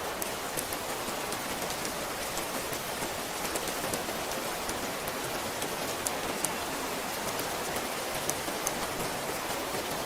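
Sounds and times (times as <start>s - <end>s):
raindrops ticking on surface: 0.0s - 10.0s
steady rain hiss: 0.0s - 10.0s.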